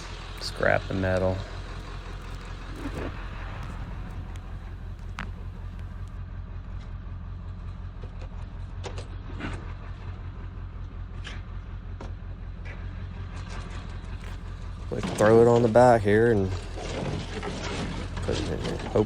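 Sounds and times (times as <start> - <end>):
vehicle engine idling: 0.0 - 19.0
metal knocks and clanks: 14.8 - 19.0.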